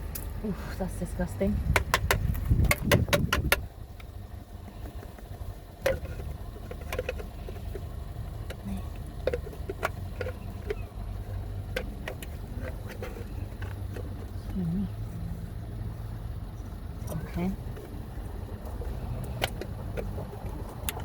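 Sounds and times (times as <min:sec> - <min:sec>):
low steady hum: 0:00.0 - 0:21.0
plastic parts clicking and knocking: 0:01.7 - 0:04.2, 0:04.8 - 0:14.6, 0:18.7 - 0:21.0.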